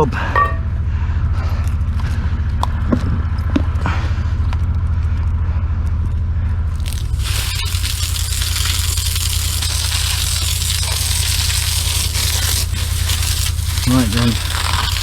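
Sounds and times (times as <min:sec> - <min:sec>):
engine and pump pulsing drone: 0:00.0 - 0:15.0
loud steady hiss: 0:06.8 - 0:15.0.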